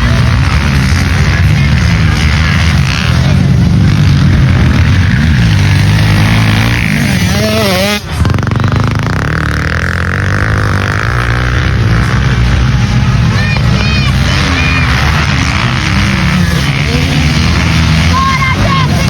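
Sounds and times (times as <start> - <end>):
motocross bike engine revving: 0.0 - 19.0.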